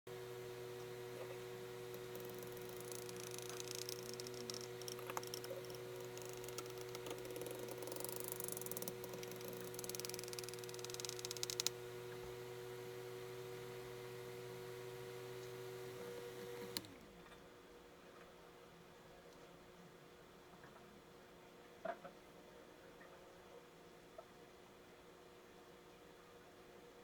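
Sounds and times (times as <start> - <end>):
electrical hum: 0.0 - 17.1.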